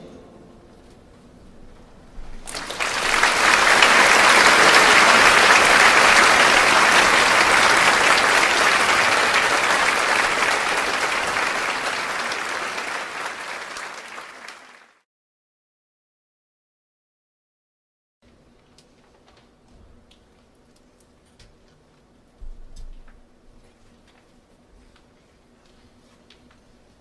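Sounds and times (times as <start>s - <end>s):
audience applauding: 2.4s - 15.0s.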